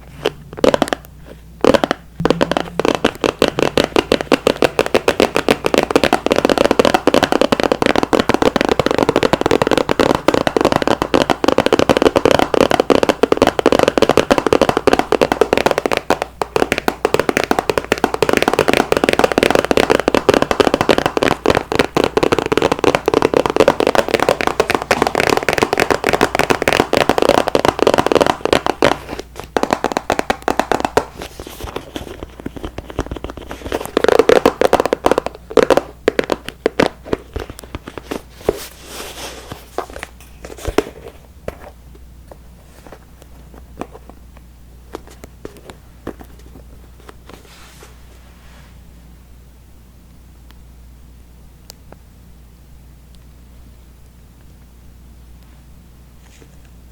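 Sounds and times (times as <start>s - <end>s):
crackling and scratching clicks: 0.0s - 41.8s.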